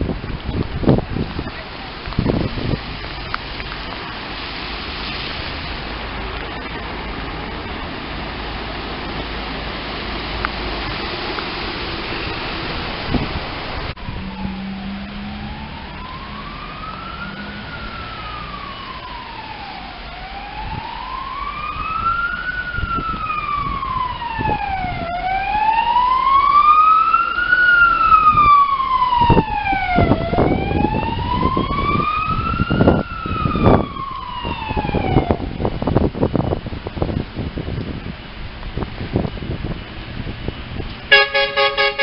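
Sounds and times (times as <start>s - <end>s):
emergency siren wailing: 13.8s - 36.6s, 39.6s - 42.0s.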